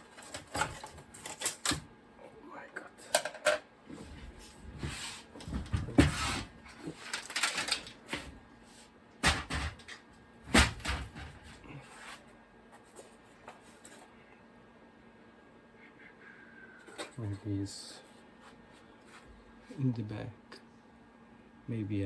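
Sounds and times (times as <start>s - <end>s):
scraping and rubbing of computer parts: 0.0s - 1.7s, 3.0s - 10.0s, 10.6s - 14.1s.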